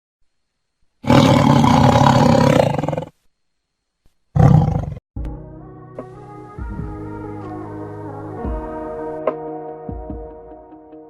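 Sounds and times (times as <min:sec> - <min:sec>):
music: 0:05.2 - 0:11.0.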